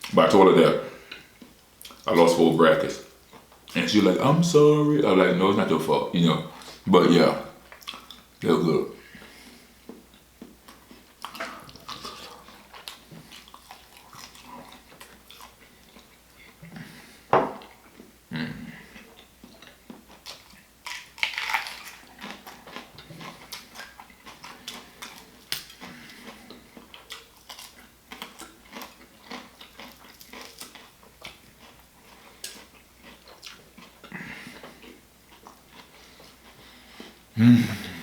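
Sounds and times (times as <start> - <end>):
chewing and mouth smacking: 7.7 - 8.3, 9.2 - 16.9, 18.9 - 37.2.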